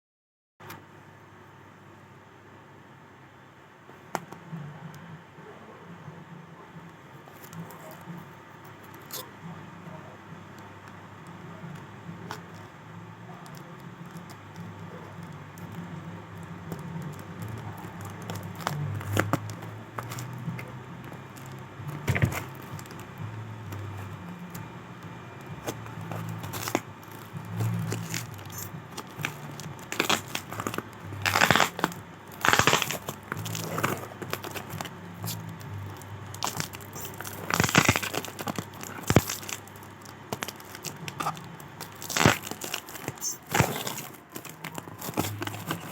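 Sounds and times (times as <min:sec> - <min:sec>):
packaging crinkling and tearing: 0:13.4 - 0:24.8, 0:25.4 - 0:45.9.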